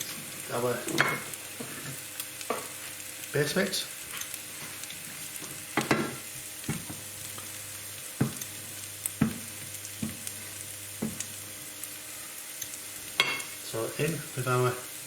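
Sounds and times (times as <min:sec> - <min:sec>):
paste sizzling in oil: 0:00.0 - 0:15.0
spoon knocking against pan: 0:08.2 - 0:08.4, 0:09.2 - 0:10.2, 0:11.0 - 0:11.3.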